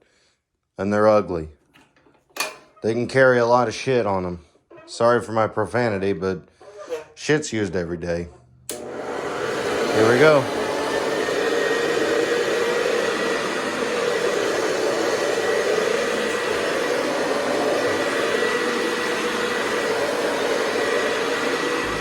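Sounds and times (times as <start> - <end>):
vacuum cleaner running: 8.7 - 22.0.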